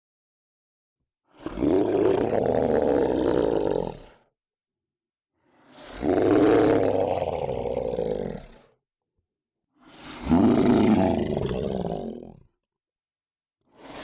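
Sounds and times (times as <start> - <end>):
monster growl: 10.2 - 12.4.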